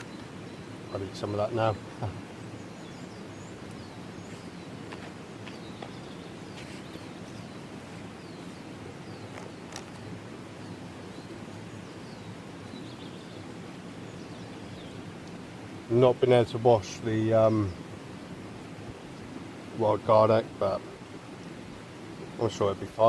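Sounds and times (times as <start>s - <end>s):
high falling bird chirps: 0.0s - 15.2s
low background rush: 0.0s - 23.0s.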